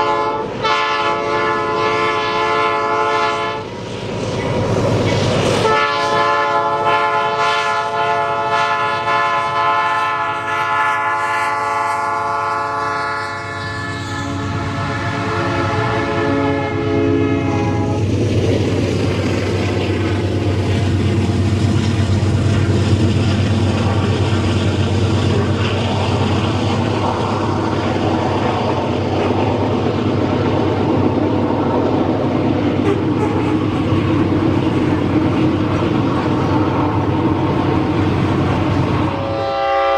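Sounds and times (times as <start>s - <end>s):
locomotive air horn: 0.0s - 3.7s, 5.6s - 18.1s, 39.1s - 39.9s
train rumbling past: 0.0s - 39.9s.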